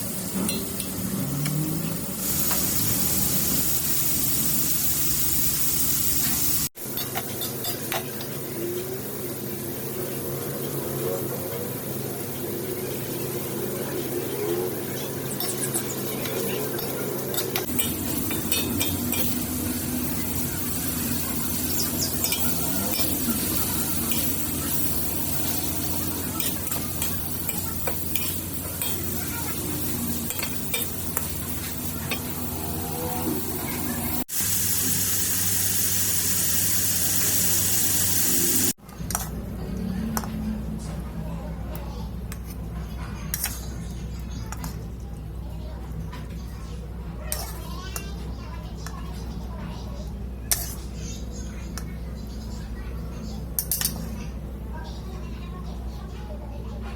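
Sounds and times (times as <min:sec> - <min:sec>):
food sizzling in hot oil: 0:00.0 - 0:07.7, 0:15.2 - 0:38.8.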